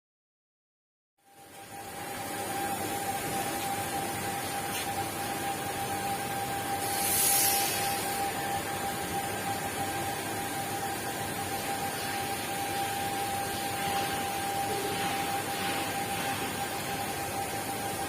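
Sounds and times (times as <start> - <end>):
cutting machine hiss and whine: 1.6 - 18.0
sharp hiss: 6.8 - 8.2.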